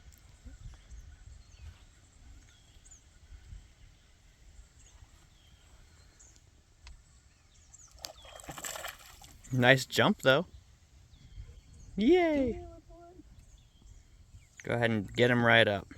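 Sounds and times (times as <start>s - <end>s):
low rumble of wind: 0.0s - 15.9s
bird chirps: 7.0s - 9.7s.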